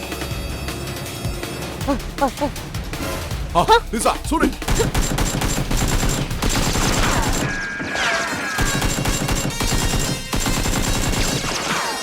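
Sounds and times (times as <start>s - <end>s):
background music: 0.0s - 7.4s.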